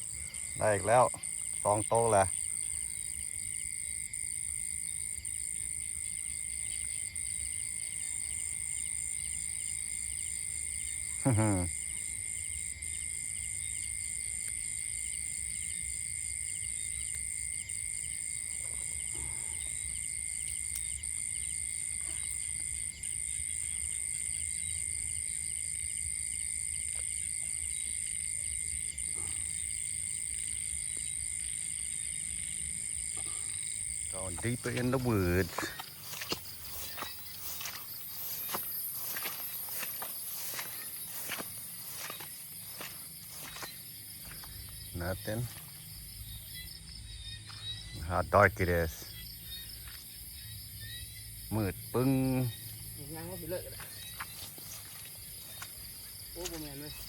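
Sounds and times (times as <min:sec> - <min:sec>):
crickets trilling: 0:00.0 - 0:57.0
fast pulsing insect layer: 0:33.1 - 0:49.7.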